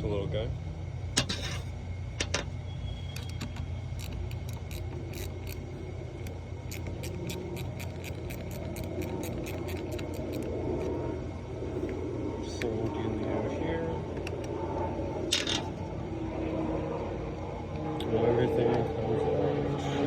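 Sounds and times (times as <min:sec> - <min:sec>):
low hum: 0:00.0 - 0:20.0
metal tools clicking and rattling: 0:03.1 - 0:10.5.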